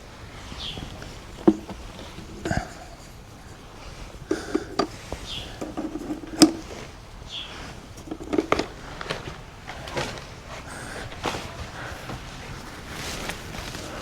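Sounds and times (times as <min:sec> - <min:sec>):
hands knocking in nest boxes: 0:00.7 - 0:06.8, 0:08.0 - 0:08.8.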